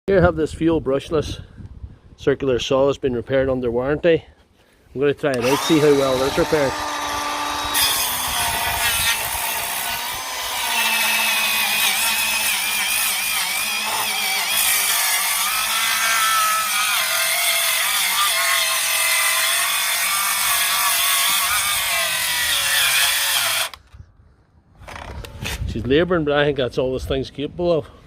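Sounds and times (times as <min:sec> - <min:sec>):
circular saw cutting wood: 0:05.3 - 0:23.8.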